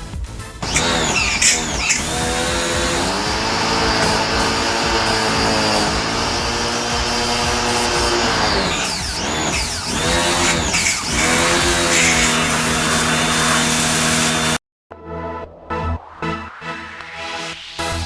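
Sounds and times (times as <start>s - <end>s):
pressure washer motor whine: 0.6s - 14.6s
water spray hissing: 0.7s - 14.4s.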